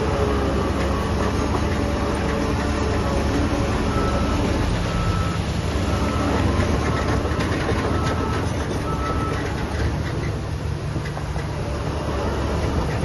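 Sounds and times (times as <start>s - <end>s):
diesel machinery droning: 0.0s - 13.0s
metallic clanks and knocks: 6.4s - 10.4s.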